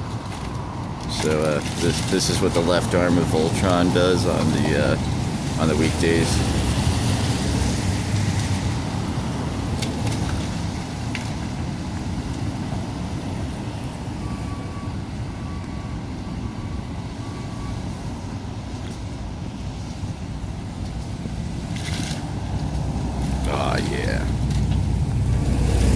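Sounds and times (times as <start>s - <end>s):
diesel engine rumbling: 0.0s - 25.9s.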